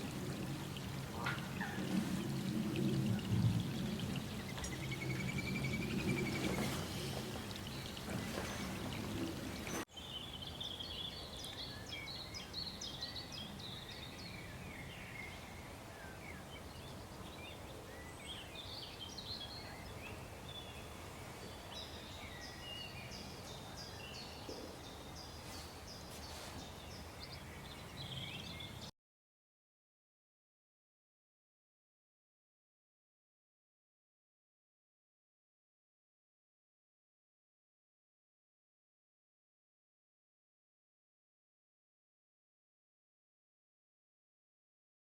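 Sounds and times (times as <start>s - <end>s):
rush of water-like noise: 0.0s - 9.8s
outdoor background hiss: 0.0s - 28.9s
small birds chirping: 0.7s - 28.9s.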